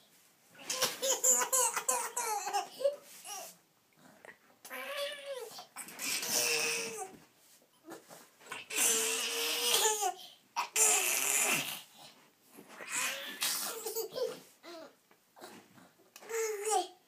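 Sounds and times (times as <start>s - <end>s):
baby babbling and laughing: 16.2s - 17.0s.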